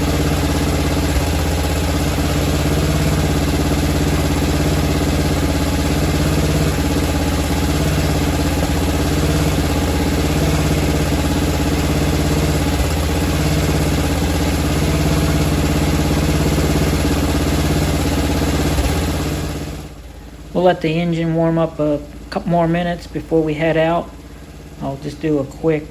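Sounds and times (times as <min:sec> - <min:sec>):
engine idling: 0:00.0 - 0:25.9.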